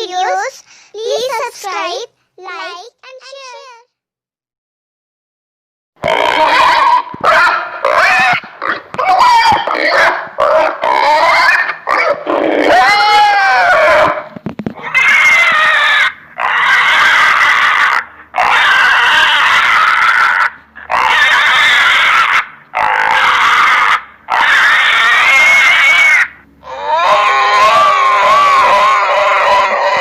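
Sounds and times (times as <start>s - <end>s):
pig grunting: 6.0s - 12.9s, 14.0s - 30.0s
pig squealing: 6.0s - 30.0s.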